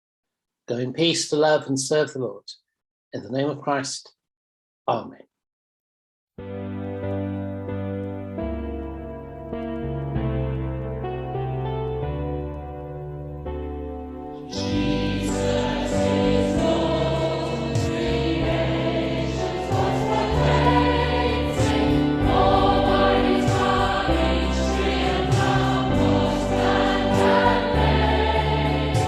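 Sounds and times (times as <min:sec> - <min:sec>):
instrumental accompaniment: 0:06.4 - 0:29.0
choir singing: 0:14.5 - 0:29.0.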